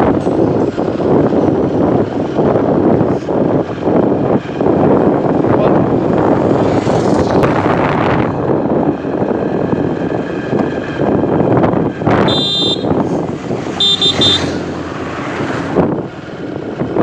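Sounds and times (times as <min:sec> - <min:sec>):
train rumbling inside coach: 0:00.0 - 0:11.9.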